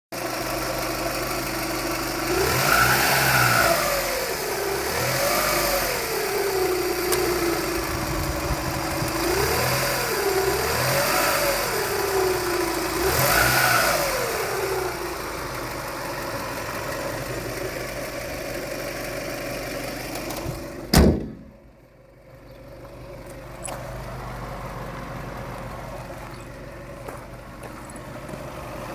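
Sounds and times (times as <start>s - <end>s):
car engine revving and idling: 0.2s - 28.9s
engine whirring: 0.4s - 21.8s.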